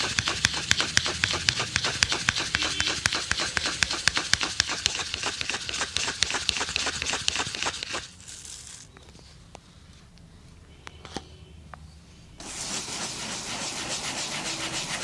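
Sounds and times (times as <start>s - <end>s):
shoe brush on leather boot: 0.0s - 8.8s, 12.4s - 15.0s.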